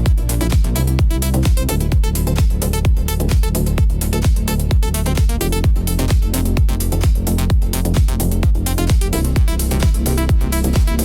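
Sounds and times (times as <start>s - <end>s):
kick drum: 0.0s - 11.0s.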